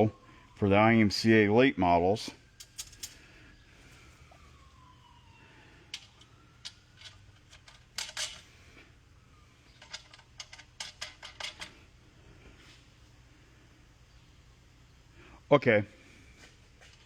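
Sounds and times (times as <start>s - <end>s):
small metal parts clicking: 2.6s - 3.2s, 5.9s - 8.5s, 9.7s - 11.8s.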